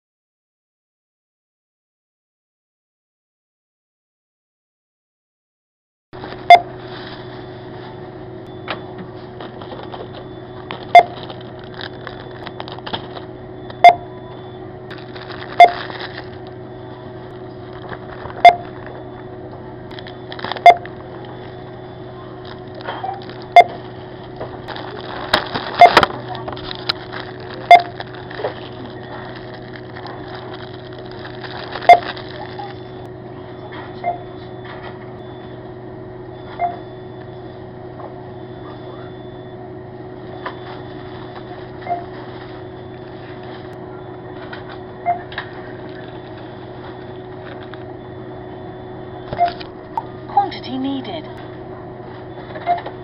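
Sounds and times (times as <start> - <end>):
steady hum: 6.2 - 53.0
barcode scanner beeps: 6.4 - 6.8, 8.4 - 35.7, 36.3 - 51.5, 52.3 - 53.0
packaging rustling and clattering: 9.3 - 13.3, 14.9 - 16.5, 17.6 - 19.0, 19.9 - 20.6, 22.4 - 32.8.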